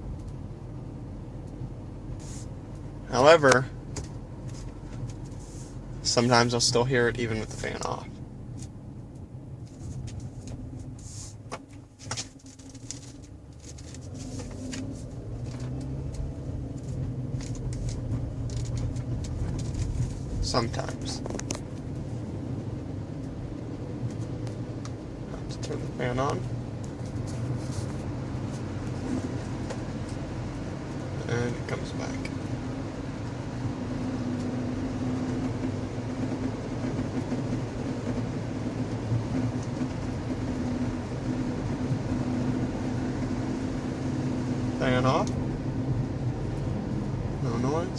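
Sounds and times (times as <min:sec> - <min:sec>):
car engine running: 0:00.0 - 0:47.9.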